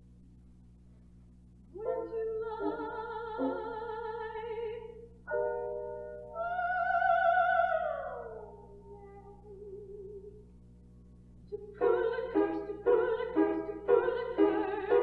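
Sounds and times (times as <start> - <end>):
piano accompaniment: 1.8 - 4.6, 5.3 - 8.8, 11.7 - 15.0
soprano singing with vibrato: 1.8 - 5.5, 6.2 - 10.4, 11.5 - 15.0.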